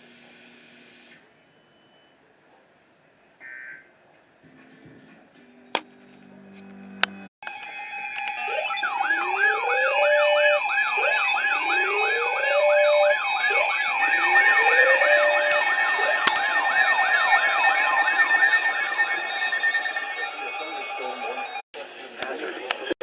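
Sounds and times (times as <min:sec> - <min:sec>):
siren slow wail: 0:07.4 - 0:21.6
steady siren tones: 0:07.4 - 0:21.6
siren fast yelp: 0:07.6 - 0:21.6.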